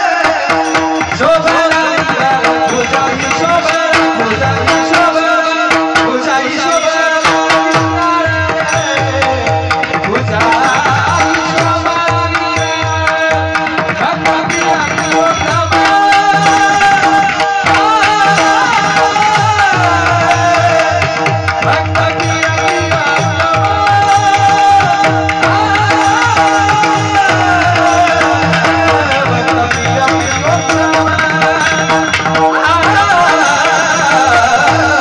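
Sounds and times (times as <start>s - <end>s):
hand drum rhythm: 0.0s - 35.0s.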